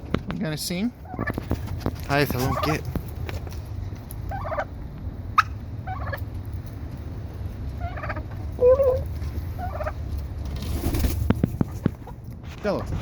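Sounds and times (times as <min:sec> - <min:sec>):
wind rumble on microphone: 0:00.0 - 0:13.0
hens warbling calls: 0:01.0 - 0:02.9, 0:04.2 - 0:06.3, 0:07.7 - 0:10.1.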